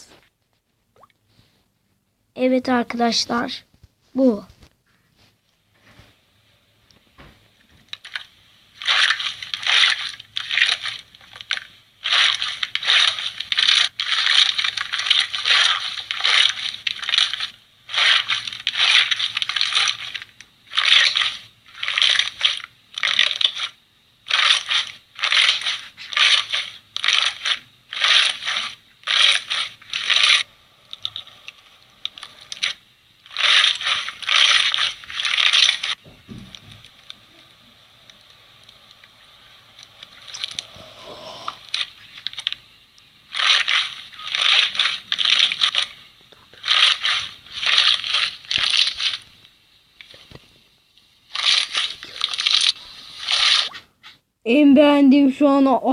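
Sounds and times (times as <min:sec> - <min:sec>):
slime crackling and popping: 0:08.0 - 0:31.3, 0:32.0 - 0:36.0, 0:43.3 - 0:46.0, 0:46.6 - 0:49.4, 0:51.3 - 0:53.8.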